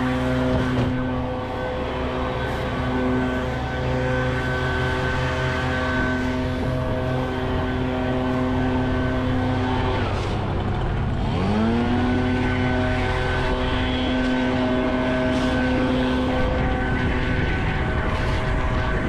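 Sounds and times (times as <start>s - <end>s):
chainsaw revving: 0.0s - 18.6s.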